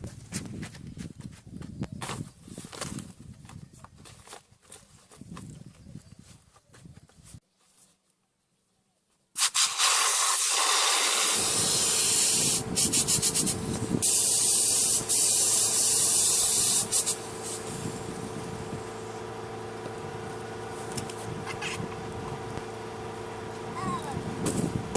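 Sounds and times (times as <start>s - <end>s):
air pump rushing hiss: 9.4s - 18.0s
motor hum: 11.4s - 24.9s.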